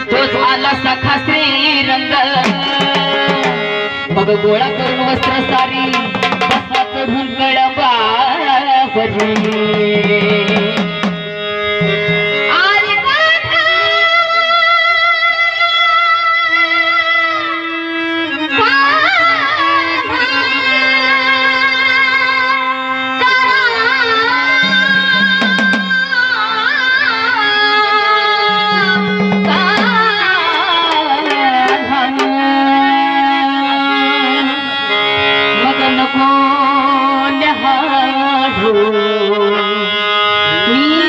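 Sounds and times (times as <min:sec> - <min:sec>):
percussion: 0:00.0 - 0:15.6, 0:23.2 - 0:41.0
wavering melody line: 0:02.3 - 0:07.2, 0:24.4 - 0:26.6, 0:28.2 - 0:32.6.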